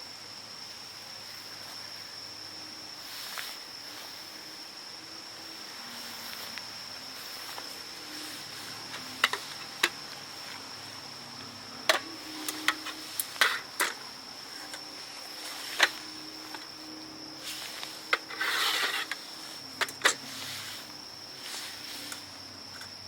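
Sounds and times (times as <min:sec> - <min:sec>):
high-pitched insect drone: 0:00.0 - 0:23.0.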